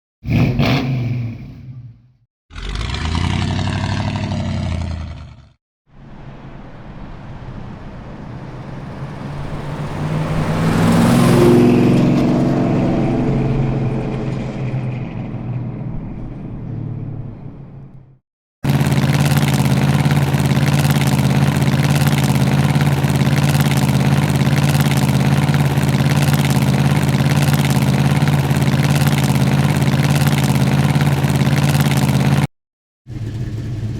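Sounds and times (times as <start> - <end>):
car accelerating past: 6.0 - 18.0
car engine revving: 7.0 - 32.5
car engine idling: 7.3 - 32.5, 33.1 - 33.9.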